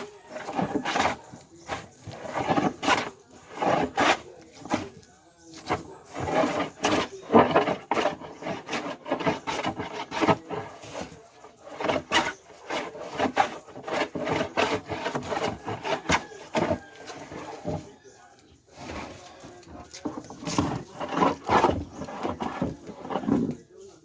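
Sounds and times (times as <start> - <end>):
hand plane shaving wood: 0.0 - 23.7.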